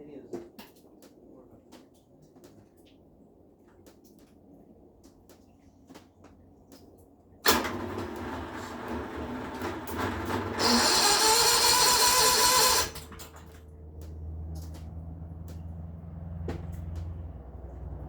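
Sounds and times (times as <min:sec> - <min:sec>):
generator low hum: 0:04.4 - 0:18.0
harsh metalworking noise on steel: 0:10.0 - 0:13.3.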